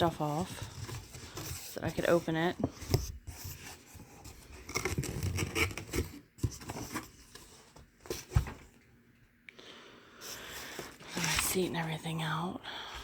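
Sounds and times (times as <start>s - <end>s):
cardboard box scraping and rustling: 0.0s - 8.7s.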